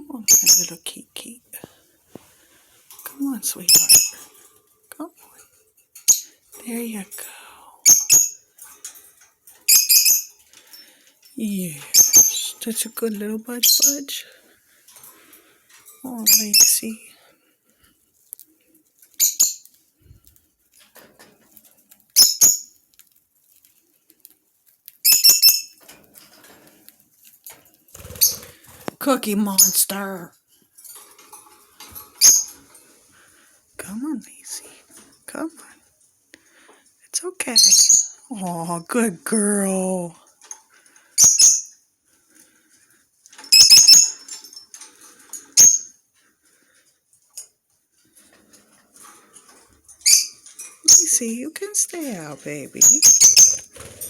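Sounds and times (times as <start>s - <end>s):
parakeet sharp chirps: 3.7s - 4.2s, 41.2s - 41.7s, 43.5s - 44.2s, 52.8s - 53.7s.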